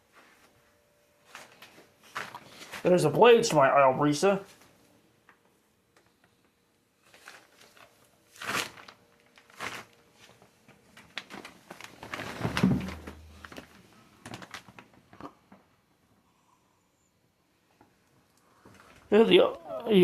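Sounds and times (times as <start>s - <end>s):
rustling of objects being handled: 0.0s - 3.6s, 4.4s - 15.6s
heavy thump: 12.4s - 13.3s.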